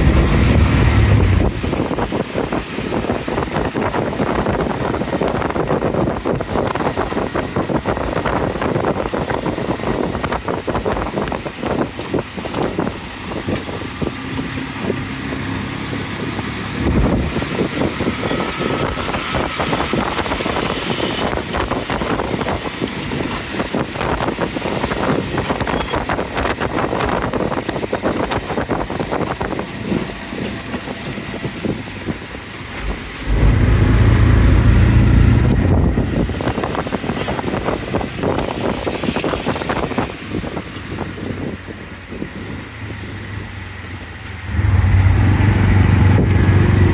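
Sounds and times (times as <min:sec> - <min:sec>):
rain and road noise: 0:00.0 - 0:46.9
low rumble: 0:32.8 - 0:36.4.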